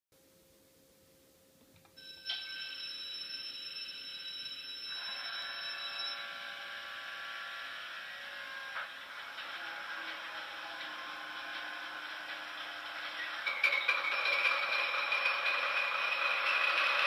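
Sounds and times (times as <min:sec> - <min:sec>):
tinny diesel engine sound from speaker: 0:06.9 - 0:17.0.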